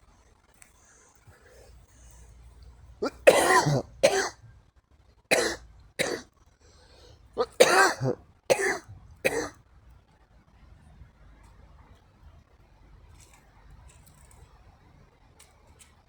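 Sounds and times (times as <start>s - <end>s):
person coughing: 3.0s - 4.4s, 5.3s - 6.2s, 7.4s - 9.6s
throat clearing: 3.0s - 4.4s, 7.4s - 9.6s.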